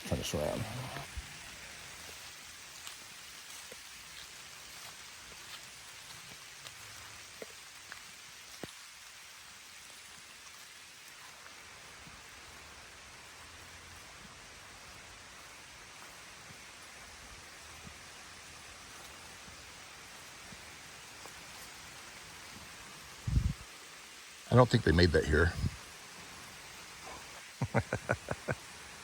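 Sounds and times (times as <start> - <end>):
light rain hissing: 0.0 - 29.0
raindrops ticking close by: 23.8 - 29.0.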